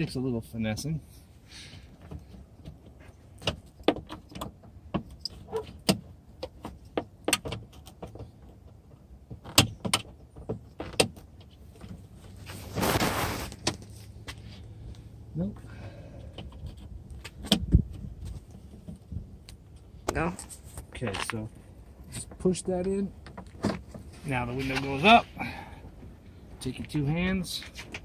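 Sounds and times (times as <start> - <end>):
clicks and knocks of window glass: 2.0 - 12.0, 16.3 - 19.2, 22.1 - 24.1
scraping rustle: 10.8 - 14.7, 23.4 - 25.4.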